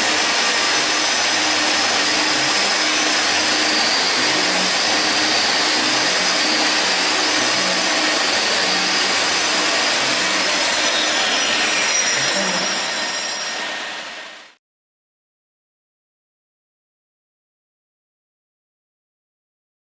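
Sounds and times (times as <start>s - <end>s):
grinder grinding concrete: 0.0s - 14.6s
industrial vacuum running: 0.0s - 14.6s.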